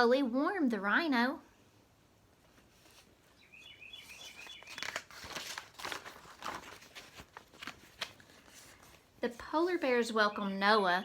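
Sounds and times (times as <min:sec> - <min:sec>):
book pages rustling: 0:02.4 - 0:09.9.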